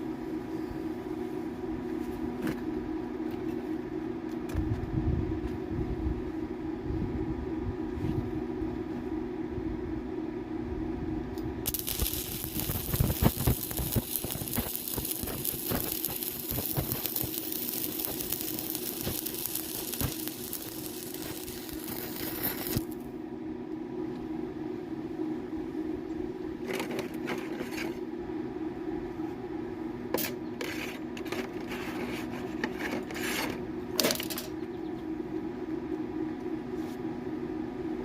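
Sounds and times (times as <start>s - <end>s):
machine hum: 0.0s - 32.8s
loud hiss: 11.7s - 23.0s.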